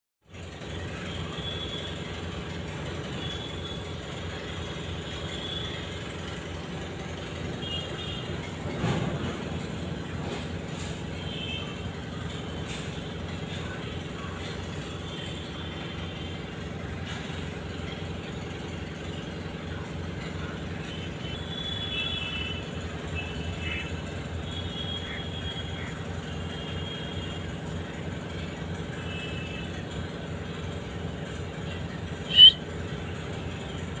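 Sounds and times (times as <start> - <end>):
low mechanical hum: 0.3 - 34.0
faint high chirps: 32.3 - 32.6
parrot squawking: 32.3 - 32.6.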